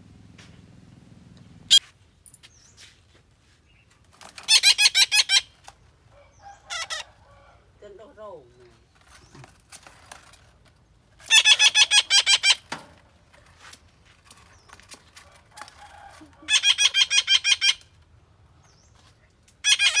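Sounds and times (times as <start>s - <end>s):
bird calling harsh repeated notes: 4.4s - 5.6s, 11.3s - 12.7s, 16.5s - 17.9s, 19.6s - 20.0s.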